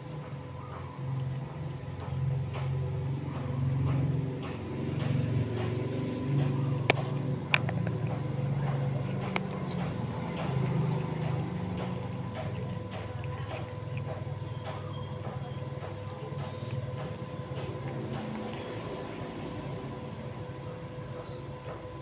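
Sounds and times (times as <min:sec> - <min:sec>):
low hum: 0:00.0 - 0:22.0
cat crunching cucumber: 0:04.9 - 0:19.9.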